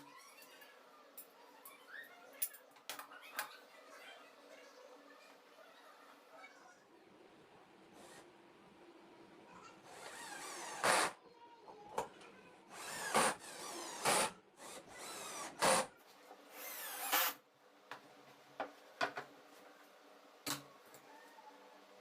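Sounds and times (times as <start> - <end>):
power drill motor whirring: 9.9 - 11.2, 12.7 - 15.9, 16.6 - 17.4.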